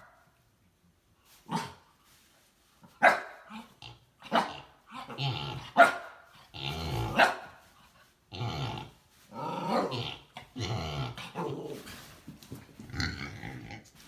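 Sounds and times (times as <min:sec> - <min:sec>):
pig snoring: 0:05.2 - 0:05.8, 0:06.5 - 0:07.2, 0:08.3 - 0:11.4, 0:12.9 - 0:13.9.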